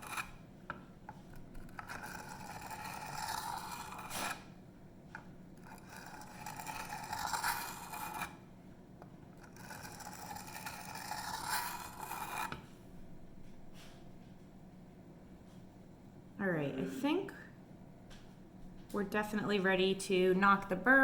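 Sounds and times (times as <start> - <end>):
knife scraping on whetstone: 0.0 - 0.4, 1.2 - 4.5, 5.6 - 8.4, 9.4 - 12.6.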